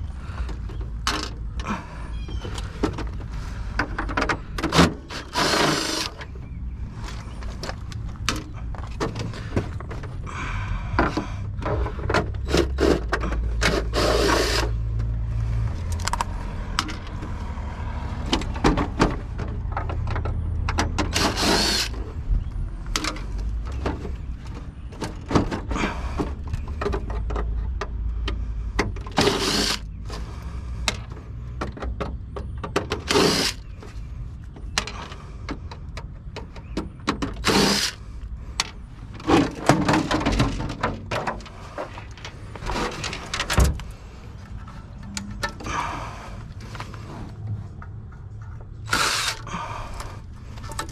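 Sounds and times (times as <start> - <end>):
tools clicking and knocking: 0.5 - 1.7, 18.2 - 22.0, 22.9 - 30.2, 34.6 - 38.0, 46.7 - 50.9
loud scraping or rattling bursts: 2.7 - 6.3, 11.6 - 15.6, 20.9 - 22.1, 29.0 - 30.8, 32.9 - 33.7, 37.3 - 38.2, 39.1 - 47.7, 48.8 - 50.9.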